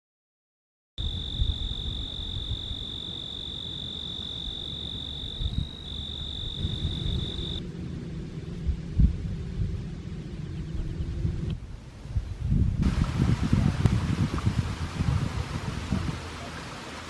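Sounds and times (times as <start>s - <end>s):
insect trilling: 1.0s - 7.6s
low rumbling wind: 1.0s - 17.0s.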